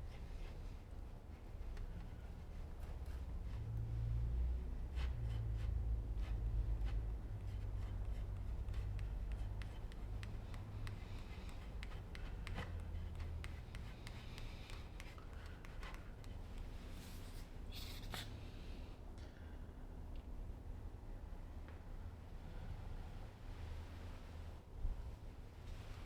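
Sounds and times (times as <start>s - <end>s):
steady low hum: 0.0s - 17.7s.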